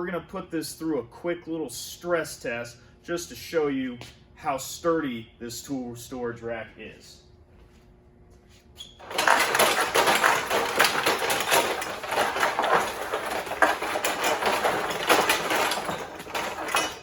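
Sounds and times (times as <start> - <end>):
tool handles rattling in rack: 9.0 - 17.0.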